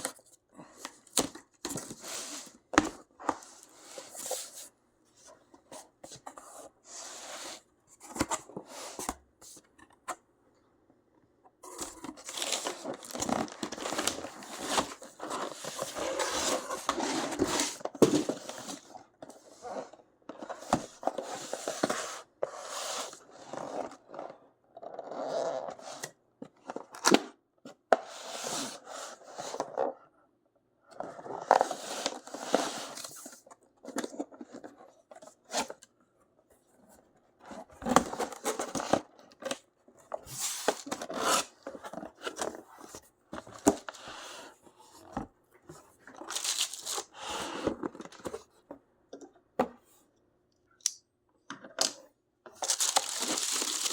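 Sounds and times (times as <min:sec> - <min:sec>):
cardboard and wrapping rustling: 0:00.0 - 0:09.6, 0:11.6 - 0:22.3, 0:37.4 - 0:48.7, 0:52.5 - 0:53.9.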